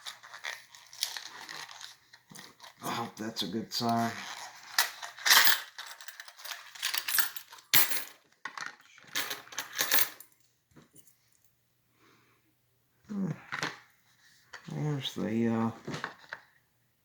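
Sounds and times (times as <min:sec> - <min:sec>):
small metal parts clinking: 0:03.8 - 0:10.4.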